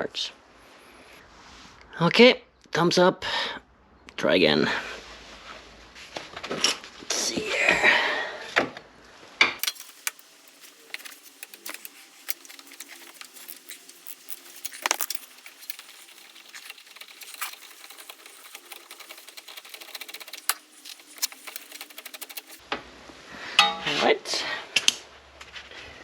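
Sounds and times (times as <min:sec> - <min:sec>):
metal tools clinking: 0:09.6 - 0:18.7.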